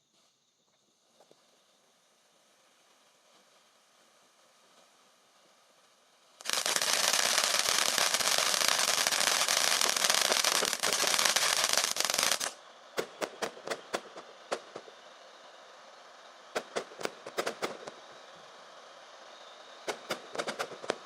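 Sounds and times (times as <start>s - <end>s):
fireworks crackling: 0.0s - 21.0s
sharp firework pops: 6.4s - 15.0s, 16.5s - 18.2s, 19.8s - 21.0s.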